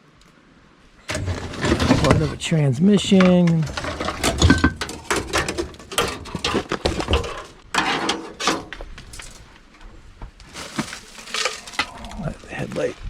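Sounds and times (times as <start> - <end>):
metal parts clanking: 1.1 - 9.5, 10.9 - 12.0.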